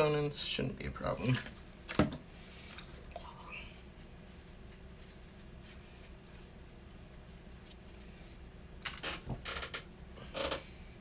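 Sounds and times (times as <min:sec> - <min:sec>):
faint handling noises: 0:01.0 - 0:08.4.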